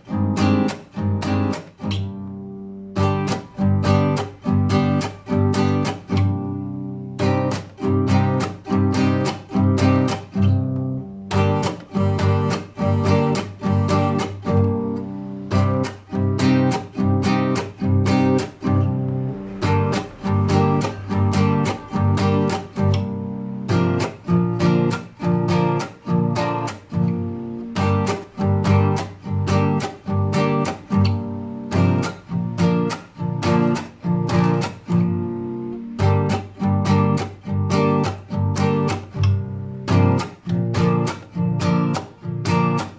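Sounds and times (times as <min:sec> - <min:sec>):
acoustic guitar strumming chords: 0:00.0 - 0:42.9.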